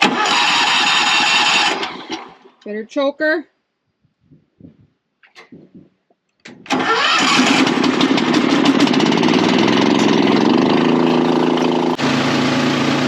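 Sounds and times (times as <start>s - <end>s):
engine cranking and starting: 0.0s - 2.6s, 6.4s - 12.2s
engine running steadily: 6.5s - 13.0s.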